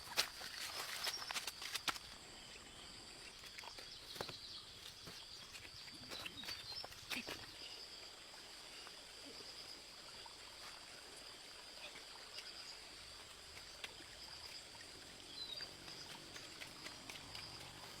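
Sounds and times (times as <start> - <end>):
stream water trickling: 0.0 - 18.0.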